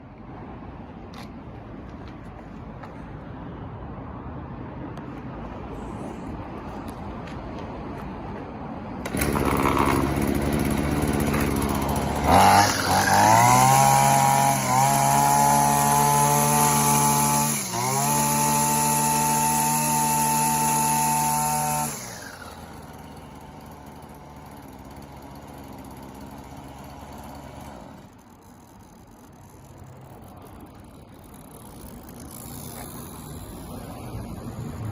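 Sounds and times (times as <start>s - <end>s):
brush cutter engine revving: 9.0s - 34.9s.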